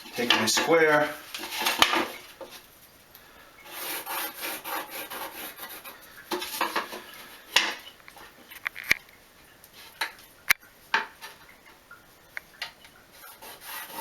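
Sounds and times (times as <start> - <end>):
pencil scratching on drywall: 3.6 - 7.0, 13.1 - 14.0.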